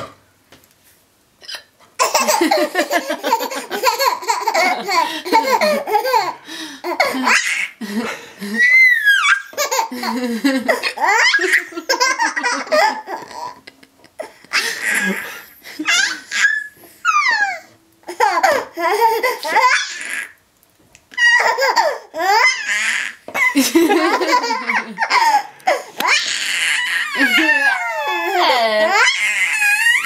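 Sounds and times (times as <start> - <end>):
baby laughing: 1.4 - 7.8, 8.4 - 20.3, 21.1 - 30.0
baby squealing: 8.6 - 9.6, 15.9 - 17.7, 19.4 - 20.4, 21.2 - 23.5, 25.1 - 30.0.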